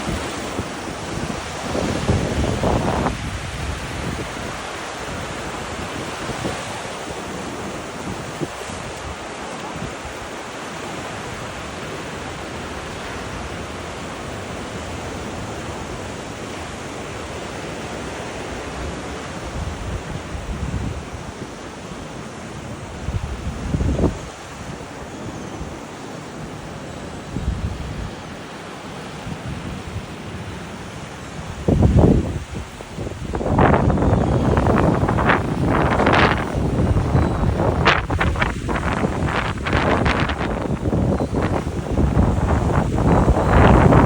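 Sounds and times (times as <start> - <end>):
wind buffeting microphone: 0.0 - 10.3, 19.4 - 21.6, 22.8 - 25.8, 27.2 - 28.3, 31.4 - 44.0
sea waves breaking on beach: 0.0 - 44.0.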